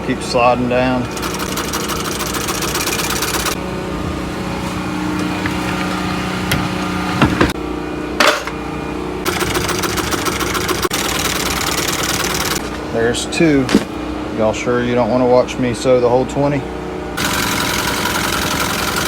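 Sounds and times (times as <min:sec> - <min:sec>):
sewing machine stitching: 0:01.1 - 0:03.6, 0:09.3 - 0:12.7, 0:17.2 - 0:19.0.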